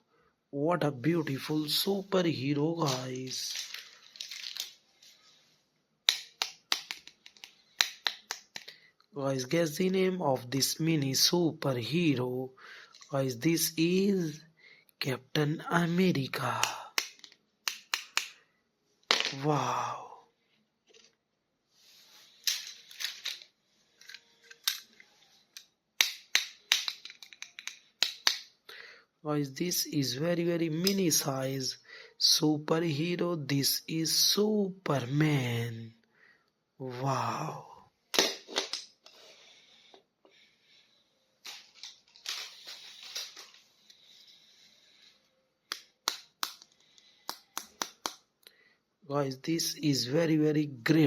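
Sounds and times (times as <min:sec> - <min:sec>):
plastic packaging crinkling: 0:02.8 - 0:05.3.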